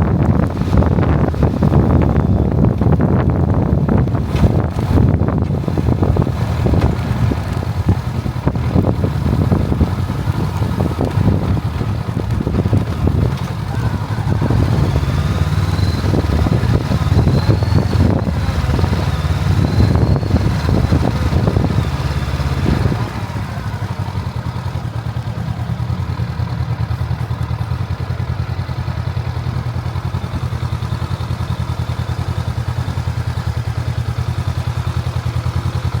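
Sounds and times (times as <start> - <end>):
wind buffeting microphone: 0.0 - 28.0
vehicle engine running: 0.0 - 36.0.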